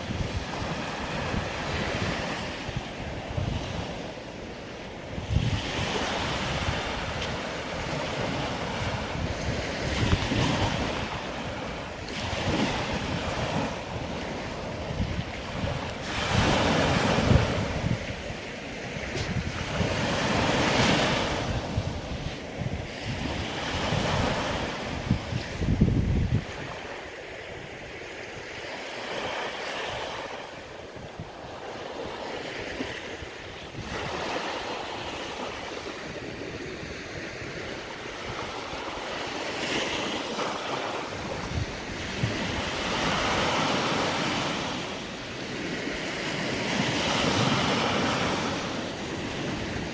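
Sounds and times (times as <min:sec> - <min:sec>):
waves breaking on beach: 0:00.0 - 0:49.9
wind buffeting microphone: 0:00.0 - 0:49.9.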